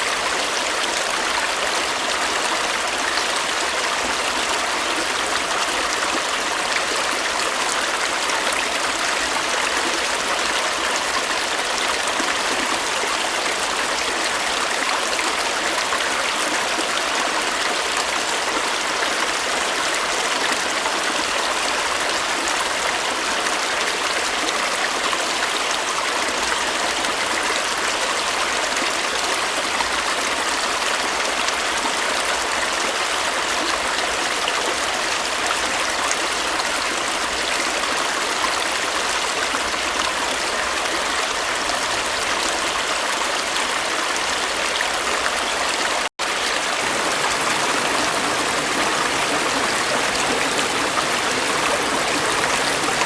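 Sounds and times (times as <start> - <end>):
stream flowing over rocks: 0.0 - 53.0.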